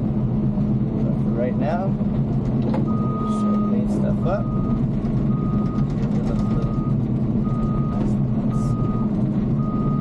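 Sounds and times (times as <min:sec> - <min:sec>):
diesel engine running: 0:00.0 - 0:10.0
backup alarm beeping: 0:04.4 - 0:10.0.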